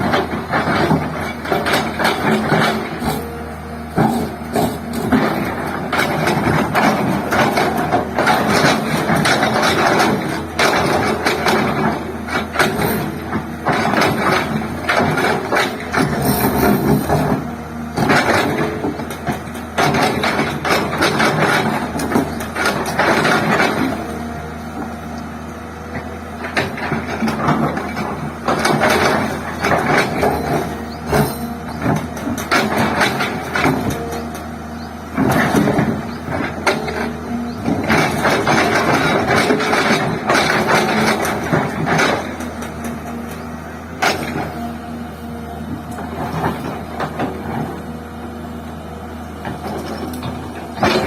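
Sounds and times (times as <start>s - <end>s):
excavator diesel engine running: 0.0s - 51.0s
metallic clanks and knocks: 25.9s - 44.7s.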